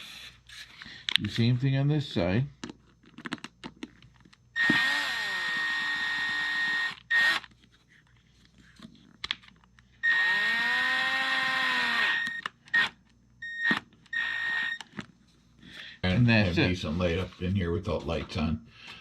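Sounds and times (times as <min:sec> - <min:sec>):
electric drill-driver running: 0:04.6 - 0:07.5, 0:10.0 - 0:14.8.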